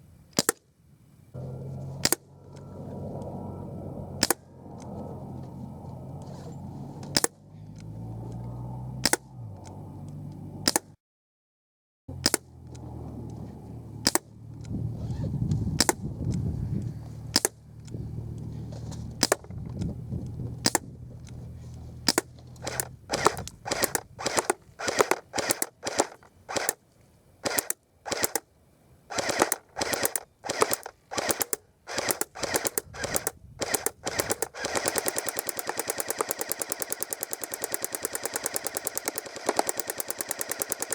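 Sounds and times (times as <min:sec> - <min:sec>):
bb gun shots: 0:00.4 - 0:00.6, 0:01.9 - 0:02.3, 0:04.2 - 0:04.5, 0:07.0 - 0:07.4, 0:09.0 - 0:09.3, 0:10.6 - 0:11.0, 0:12.1 - 0:12.8, 0:14.0 - 0:14.3, 0:15.7 - 0:16.2, 0:17.3 - 0:17.6, 0:19.2 - 0:19.5, 0:20.6 - 0:20.9, 0:22.0 - 0:26.8, 0:29.1 - 0:40.9.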